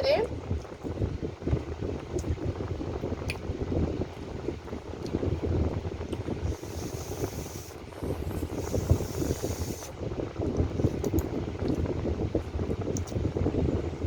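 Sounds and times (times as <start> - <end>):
fan wind noise on microphone: 0.0 - 14.0
faint hiss: 6.4 - 10.2.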